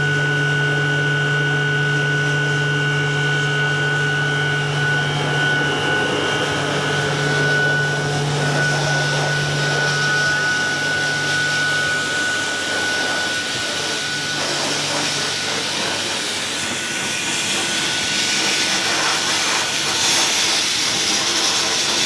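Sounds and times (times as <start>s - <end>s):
thin high whistle: 4.4s - 16.1s
compressed air hissing: 4.6s - 22.0s.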